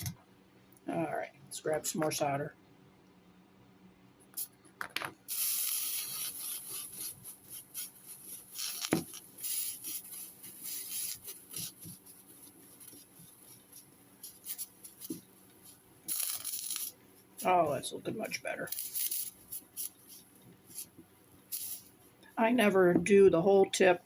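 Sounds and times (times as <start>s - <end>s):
soldering iron scratching block: 5.3s - 15.3s, 16.1s - 17.7s, 18.4s - 21.9s.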